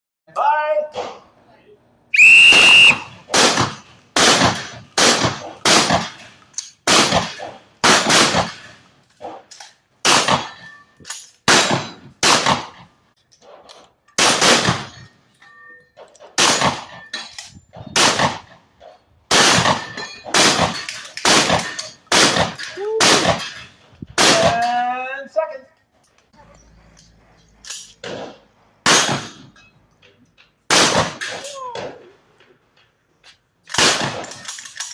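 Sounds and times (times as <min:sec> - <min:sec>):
shotgun shots: 0:02.5 - 0:08.8, 0:10.0 - 0:10.6, 0:11.5 - 0:12.9, 0:14.2 - 0:15.0, 0:16.4 - 0:17.0, 0:17.9 - 0:18.5, 0:19.3 - 0:23.6, 0:24.2 - 0:24.7, 0:28.0 - 0:29.5, 0:30.7 - 0:31.4, 0:33.7 - 0:34.4.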